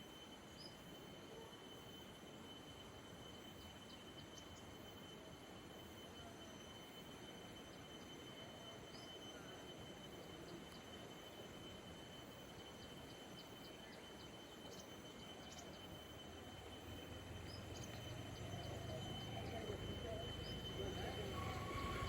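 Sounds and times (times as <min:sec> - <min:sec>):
bird chirps: 0:12.7 - 0:16.2, 0:16.9 - 0:22.0.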